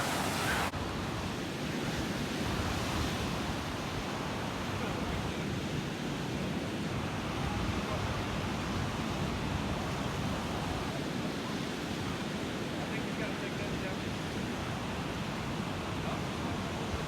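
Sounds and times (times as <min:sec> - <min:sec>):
surf: 0:00.0 - 0:00.7
wind: 0:00.0 - 0:17.0.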